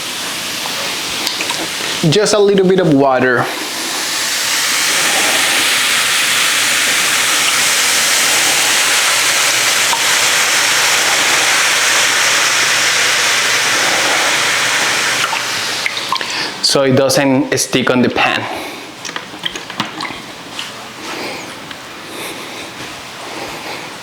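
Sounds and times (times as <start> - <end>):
water boiling off into steam: 0.0 - 18.4
mushrooms sizzling in a pan: 3.8 - 16.5.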